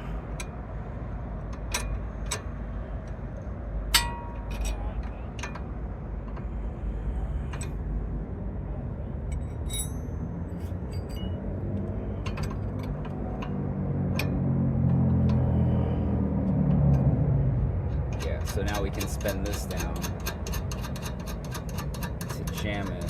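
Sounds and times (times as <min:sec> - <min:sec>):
low hum: 0:00.0 - 0:18.3
steady low rumble: 0:00.0 - 0:23.0
metallic tool clinks: 0:09.4 - 0:11.4.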